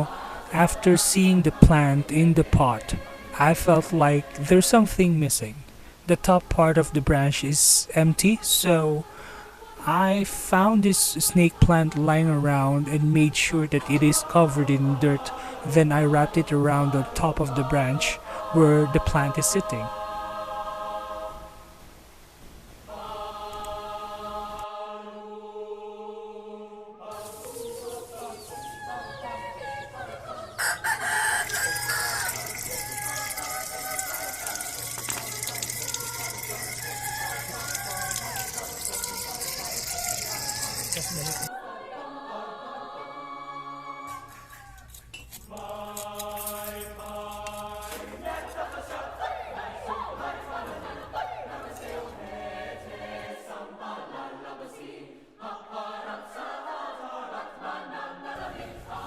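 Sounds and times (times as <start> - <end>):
slow choir-like chords: 0.0 - 5.0, 8.2 - 21.9, 22.8 - 44.0, 45.5 - 59.0.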